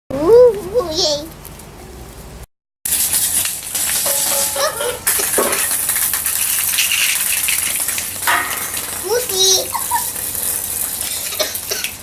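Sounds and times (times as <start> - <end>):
shaking rattling noise: 2.9 - 10.8.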